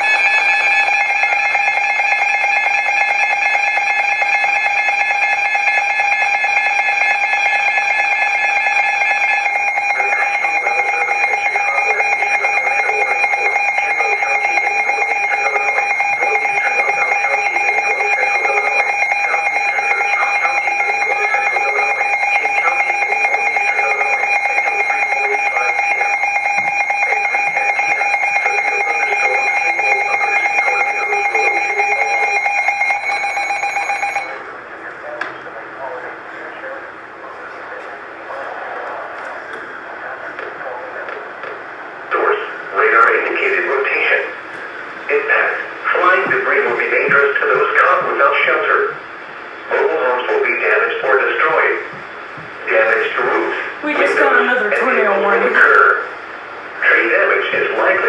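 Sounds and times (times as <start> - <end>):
two-tone alarm: 0.0 - 34.6, 52.8 - 56.1.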